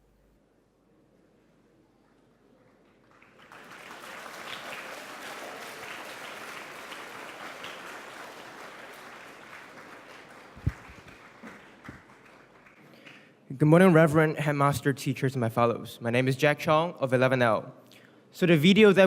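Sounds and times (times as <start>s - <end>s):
audience applauding: 2.5s - 13.4s.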